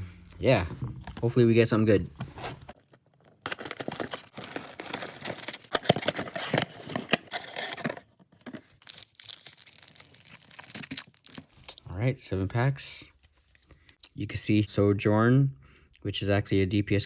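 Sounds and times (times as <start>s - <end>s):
wrapping crinkling and tearing: 2.4s - 11.8s.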